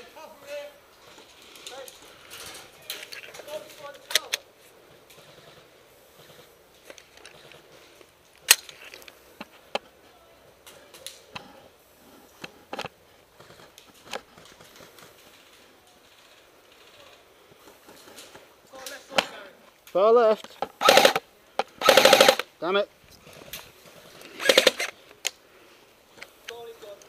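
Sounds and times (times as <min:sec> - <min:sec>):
airsoft gun shots: 0:20.8 - 0:21.2, 0:21.8 - 0:22.4.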